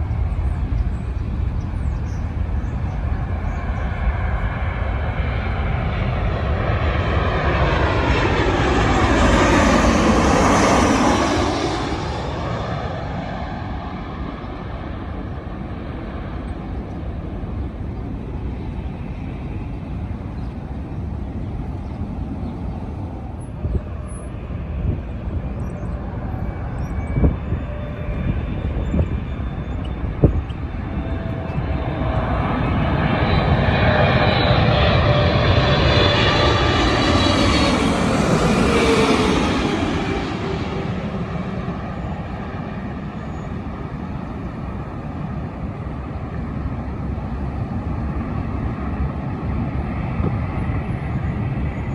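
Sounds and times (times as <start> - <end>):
jet engines roaring: 0.0 - 51.9.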